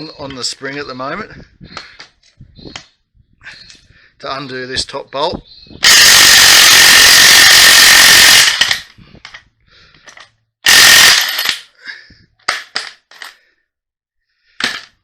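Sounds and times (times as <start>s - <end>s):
impact wrench hammering: 10.7s - 11.6s.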